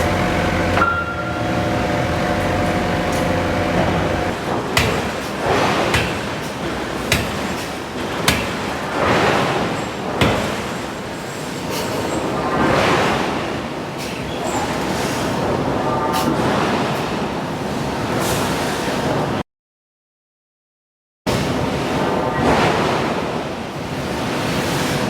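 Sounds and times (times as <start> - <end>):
loud rushing roar: 0.0 - 4.4
metal striking knocks: 0.0 - 5.3, 5.9 - 6.4, 7.1 - 7.6, 8.2 - 8.7.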